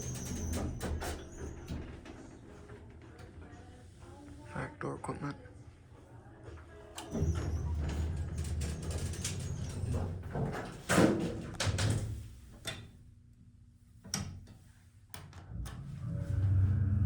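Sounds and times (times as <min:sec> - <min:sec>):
elevator doors sliding: 0:00.0 - 0:04.2, 0:07.0 - 0:12.5, 0:15.3 - 0:17.0.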